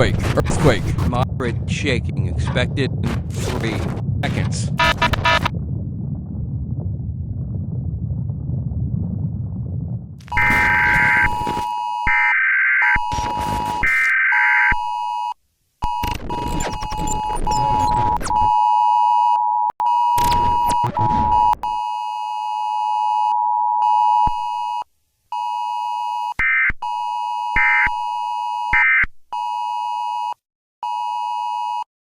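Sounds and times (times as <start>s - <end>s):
static noise bursts: 0.0s - 5.5s, 10.2s - 14.2s, 15.9s - 18.6s, 20.2s - 21.6s.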